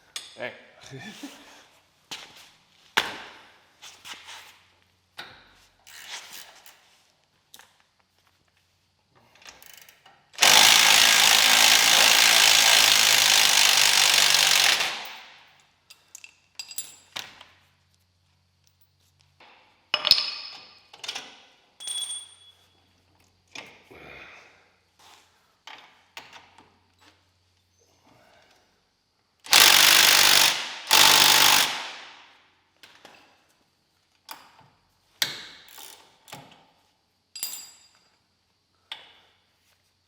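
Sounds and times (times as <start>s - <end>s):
hand tool clinks and ratchet clicks: 9.4s - 17.5s, 19.9s - 22.6s, 29.4s - 32.1s, 35.3s - 36.6s, 37.3s - 38.2s
impact driver hammering on bolt: 10.4s - 15.2s, 29.5s - 32.2s.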